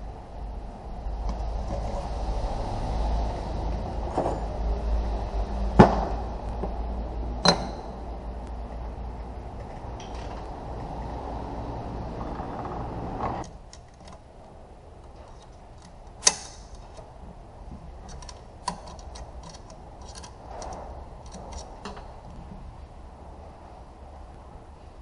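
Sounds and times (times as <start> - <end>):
steady rushing noise: 0.0 - 25.0
sharp ringing metal clank: 7.4 - 8.0
small metal parts clicking: 18.0 - 22.1.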